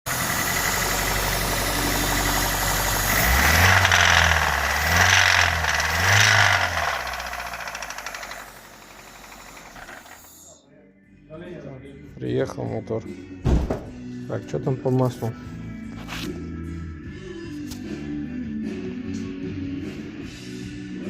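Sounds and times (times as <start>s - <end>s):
car engine knocking and revving: 0.1s - 10.3s.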